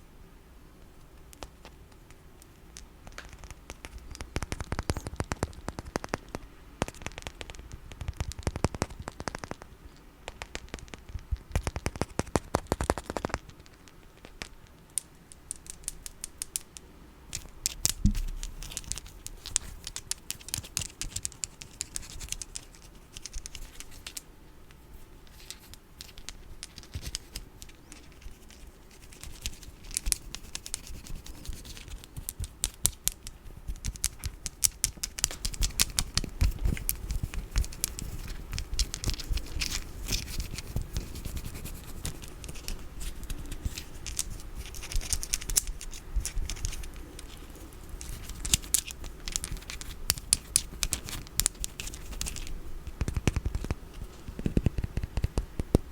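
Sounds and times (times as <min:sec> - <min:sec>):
tapping and scratching on objects: 0:01.3 - 0:55.9.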